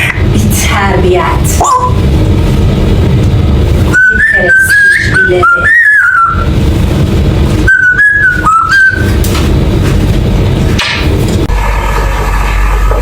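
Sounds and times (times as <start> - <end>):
steady low rumble: 0.0 - 13.0
parrot whistling a tune: 3.9 - 6.5, 7.6 - 9.2.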